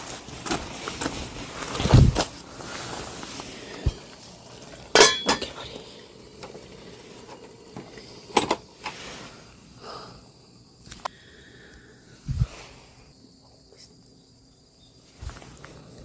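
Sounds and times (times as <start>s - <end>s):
hard objects clinking: 3.3s - 8.8s.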